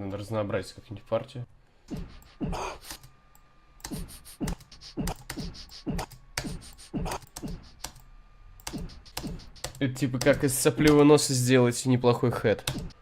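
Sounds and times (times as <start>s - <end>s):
sniff hi-hat hits: 1.9s - 3.1s, 3.8s - 8.0s, 8.7s - 9.8s.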